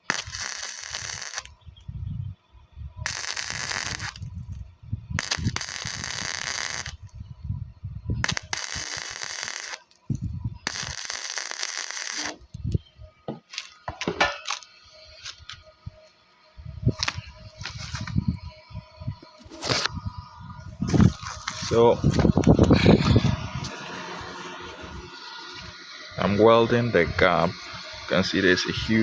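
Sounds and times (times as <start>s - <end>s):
welder arc crackling: 0.0s - 1.6s, 3.0s - 7.2s, 8.2s - 12.7s, 16.9s - 20.0s, 20.7s - 29.0s.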